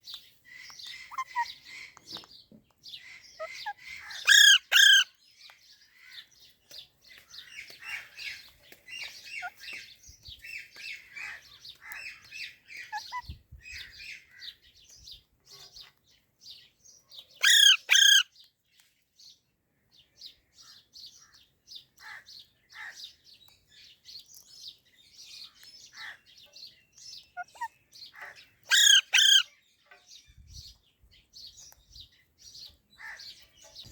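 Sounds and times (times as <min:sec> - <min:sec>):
baby parrot chirping: 0:00.7 - 0:02.0, 0:03.0 - 0:05.1, 0:11.2 - 0:14.4, 0:17.4 - 0:18.3, 0:27.3 - 0:29.6
loud shrill parrot call: 0:03.4 - 0:05.1, 0:17.4 - 0:18.3, 0:28.7 - 0:29.5.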